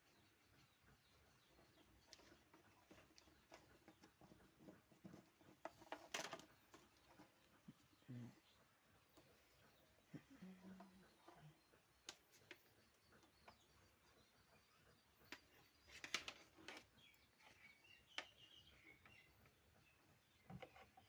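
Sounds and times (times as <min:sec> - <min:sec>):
faint sharp clicks and taps: 0:09.1 - 0:13.8.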